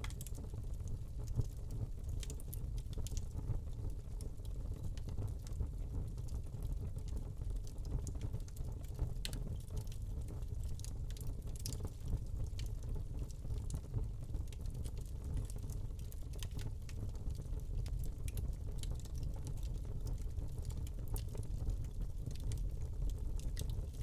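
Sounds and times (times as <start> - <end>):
log crackling and popping: 6.3 - 24.0.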